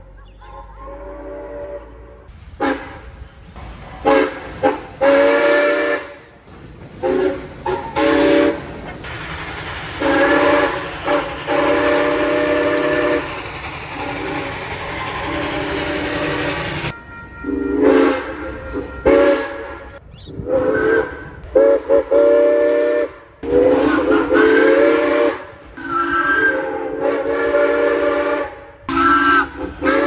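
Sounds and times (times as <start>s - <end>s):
train chime horn blasts: 0.8s - 3.0s, 4.0s - 6.3s, 10.0s - 13.3s, 15.1s - 30.0s
steady hiss: 2.3s - 16.9s.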